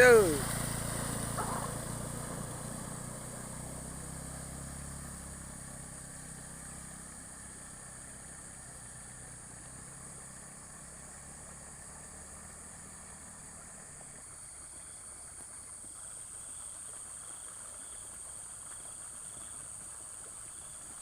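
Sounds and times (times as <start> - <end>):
vehicle engine humming: 0.0 - 15.5.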